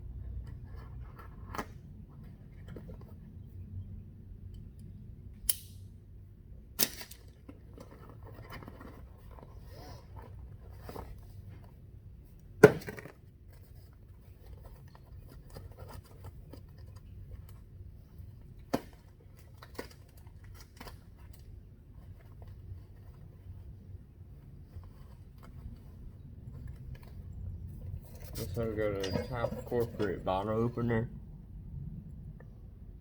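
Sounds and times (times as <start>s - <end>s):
packaging rustling and scraping: 7.1s - 11.8s, 12.8s - 30.2s.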